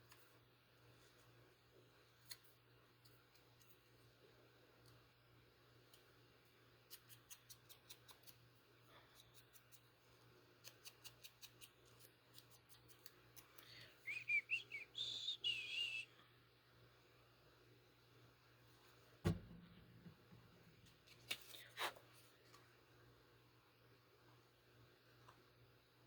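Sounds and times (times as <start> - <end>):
scissors snipping paper: 6.9 - 8.4, 10.6 - 13.7
wavering high whistle: 14.0 - 16.1.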